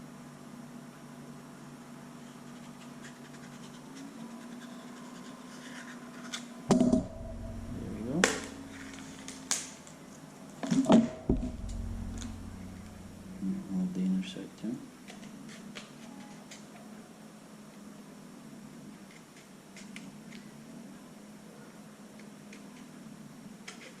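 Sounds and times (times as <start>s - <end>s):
craft knife scratching: 2.4s - 6.5s
steady low hum: 6.7s - 10.4s, 11.0s - 15.0s.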